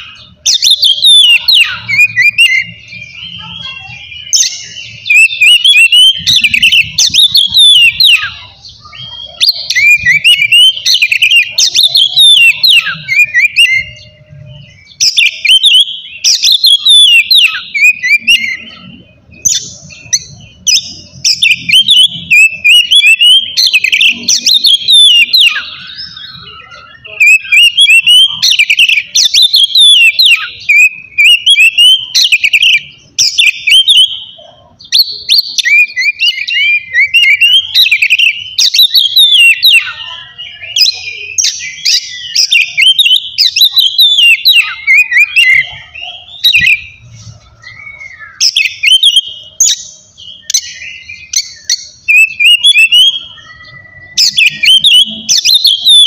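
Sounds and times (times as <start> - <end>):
songbird singing: 0.0 - 56.0.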